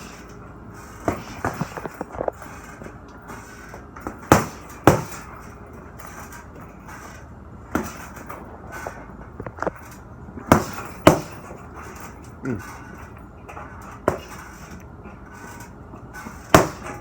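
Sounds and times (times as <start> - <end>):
punches on heavy bag: 0.9 - 2.6, 3.5 - 5.4, 7.7 - 8.3, 10.4 - 12.1, 14.0 - 14.5, 16.3 - 17.0.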